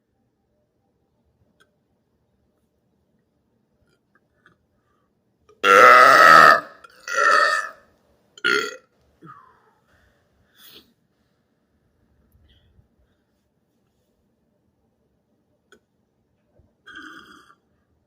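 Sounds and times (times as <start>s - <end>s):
faint small sounds: 0.0s - 5.6s, 6.8s - 18.0s
man burping: 5.6s - 7.8s, 8.4s - 9.5s, 16.9s - 17.6s.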